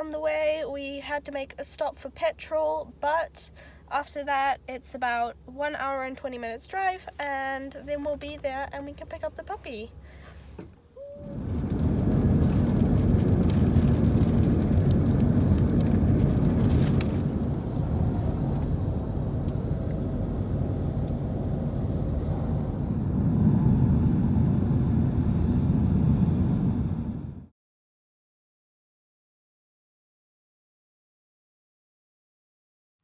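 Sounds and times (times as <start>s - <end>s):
road and engine rumble in car: 5.1s - 27.4s
light crackling: 11.2s - 17.9s.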